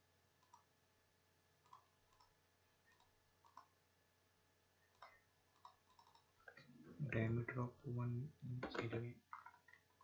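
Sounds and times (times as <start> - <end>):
faint computer mouse clicks: 1.6 - 3.7, 4.9 - 6.3.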